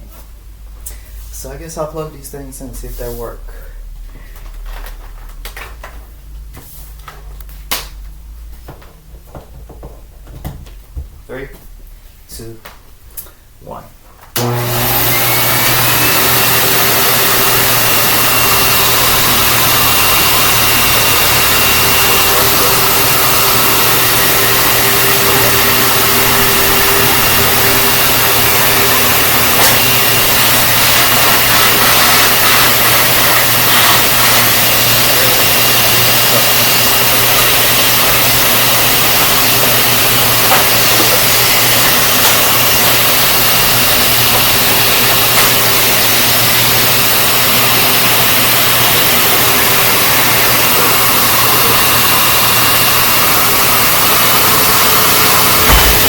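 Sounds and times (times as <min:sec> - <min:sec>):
vacuum cleaner running: 0:14.4 - 0:56.0.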